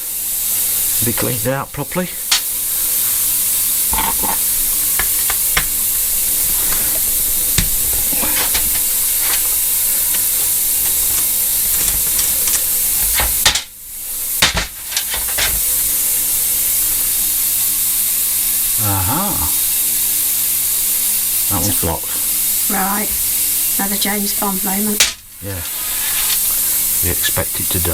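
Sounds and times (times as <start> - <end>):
ultrasonic cleaner sizzling hiss: 0.0 - 27.9
light knocks of parts: 3.9 - 13.7, 14.4 - 15.9.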